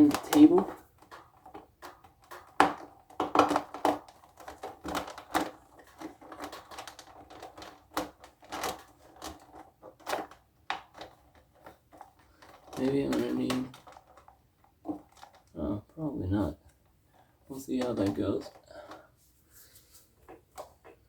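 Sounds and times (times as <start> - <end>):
plastic cable clips clicking: 0.0 - 15.6.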